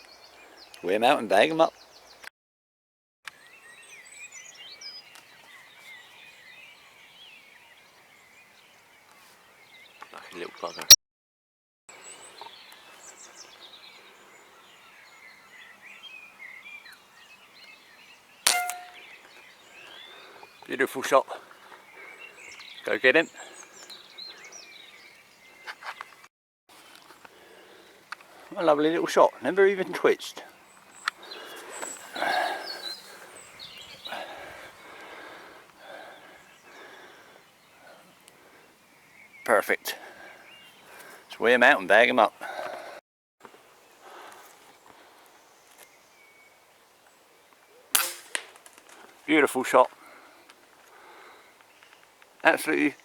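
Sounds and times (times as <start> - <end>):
small birds chirping: 0.0 - 2.3, 3.3 - 11.0, 11.9 - 53.0
air rifle shot: 48.0 - 48.5.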